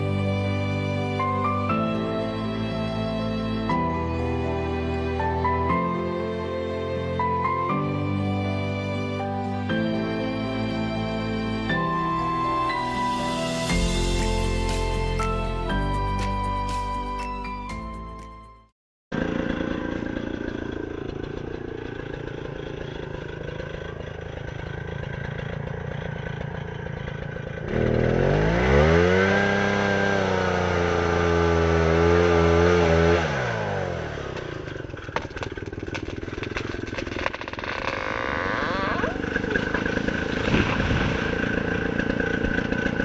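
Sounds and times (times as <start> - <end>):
small engine idling and revving: 0.0 - 16.1, 19.1 - 43.0.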